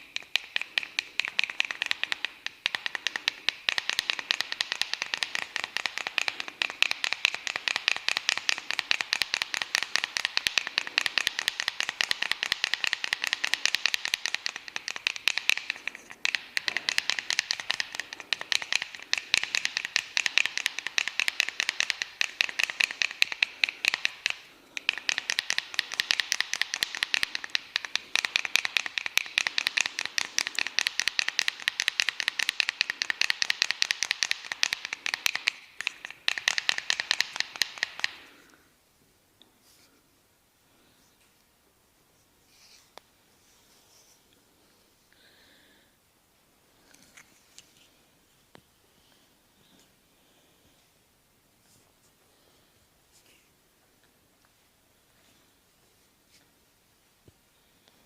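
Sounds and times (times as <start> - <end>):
hand-tapping massage strokes: 0.0 - 38.7.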